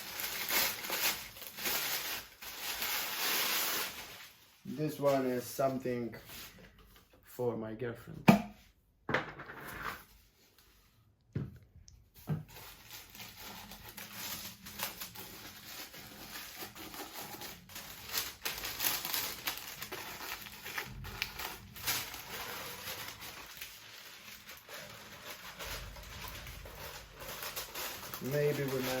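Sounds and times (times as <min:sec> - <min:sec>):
packaging ripping: 0:00.0 - 0:04.3, 0:12.5 - 0:29.0
packaging crinkling and rustling: 0:00.0 - 0:05.6, 0:12.4 - 0:29.0.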